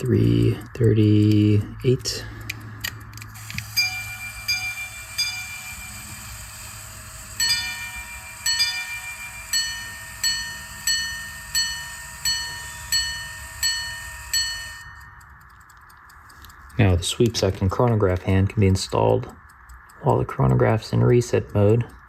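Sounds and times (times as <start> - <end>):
pocket watch striking gongs: 0.0 - 18.2.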